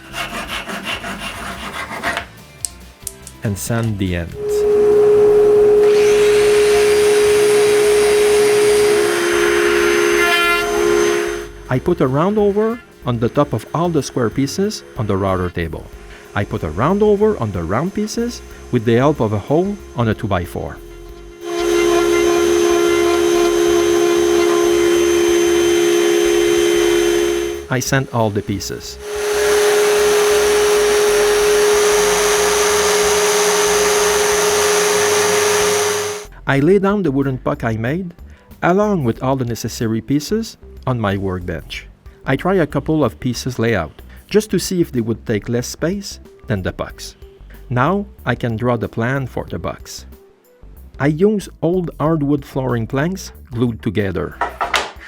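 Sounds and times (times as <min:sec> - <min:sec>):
hiss of sanding wood: 0:04.4 - 0:36.3
power sander motor whine: 0:04.4 - 0:36.3.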